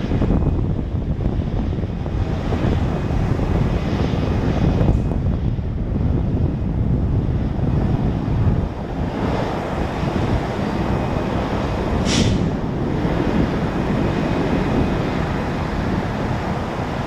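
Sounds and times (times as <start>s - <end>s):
jet engines rumbling: 0.0s - 17.0s
wind buffeting microphone: 0.0s - 17.0s
short hiss: 12.0s - 12.5s.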